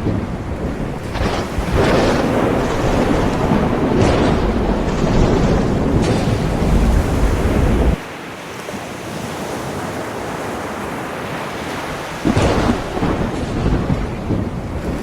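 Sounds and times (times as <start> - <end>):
heavy low rumble: 0.0 - 8.0
wind buffeting microphone: 0.0 - 8.1, 9.8 - 15.0
ocean waves washing in: 0.0 - 15.0.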